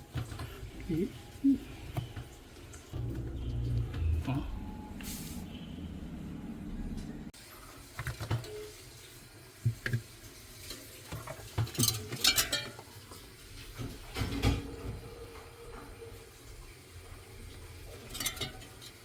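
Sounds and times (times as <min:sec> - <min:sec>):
objects knocking and clattering: 0:11.0 - 0:15.5.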